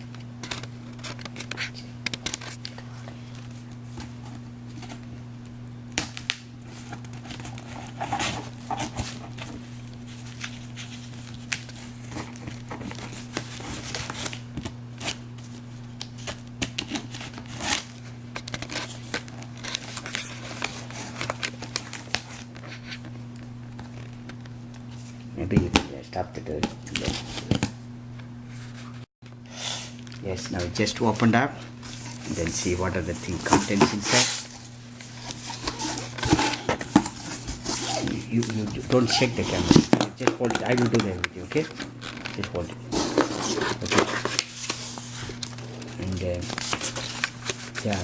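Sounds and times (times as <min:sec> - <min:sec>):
steady low hum: 0:00.0 - 0:48.0
packaging crinkling: 0:31.1 - 0:48.0.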